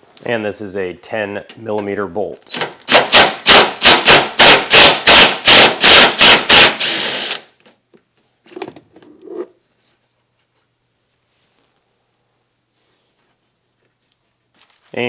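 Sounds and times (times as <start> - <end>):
faint handling sounds: 7.7 - 15.0.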